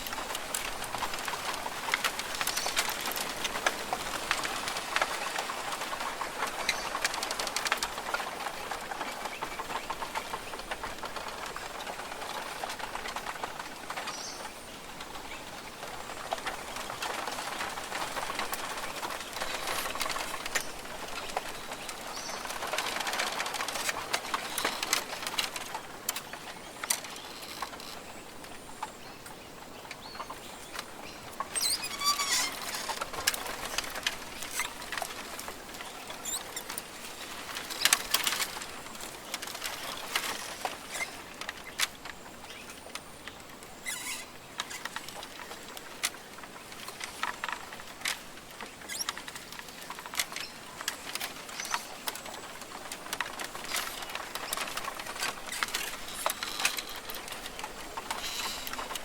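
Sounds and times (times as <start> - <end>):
clicks and rustles: 0.0 - 59.0
steady hiss: 0.0 - 59.0
high bird calls: 30.1 - 33.8, 43.8 - 44.8.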